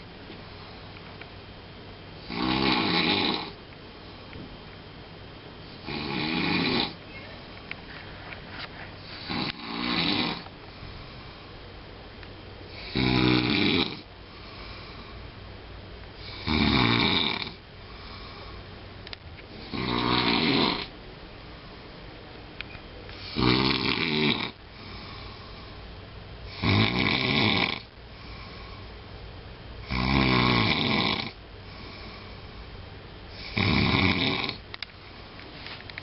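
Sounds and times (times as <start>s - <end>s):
person snoring loudly: 2.2s - 3.6s, 5.8s - 7.0s, 9.1s - 10.4s, 12.7s - 14.1s, 16.2s - 17.6s, 19.6s - 20.9s, 23.2s - 25.2s, 26.5s - 27.9s, 29.8s - 31.4s, 33.3s - 34.6s.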